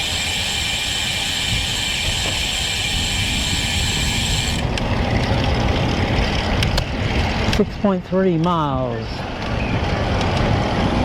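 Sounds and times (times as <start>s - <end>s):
bike freewheel hub whirring: 0.0s - 7.6s
wind rumble on microphone: 1.3s - 11.0s.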